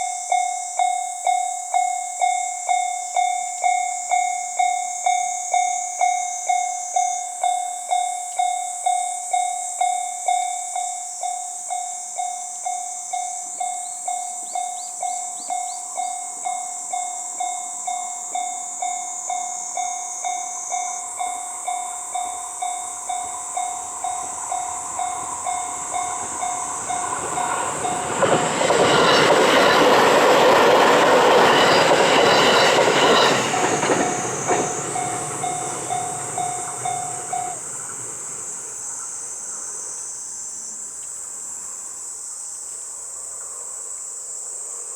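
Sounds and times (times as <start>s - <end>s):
railroad crossing bell ringing: 0.0s - 39.8s
train wheels clattering: 22.2s - 39.0s.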